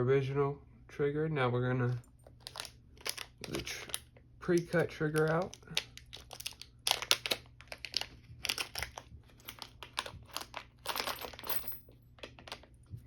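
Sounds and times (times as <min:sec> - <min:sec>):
packaging rustling and crinkling: 0:02.2 - 0:11.6, 0:12.2 - 0:12.8.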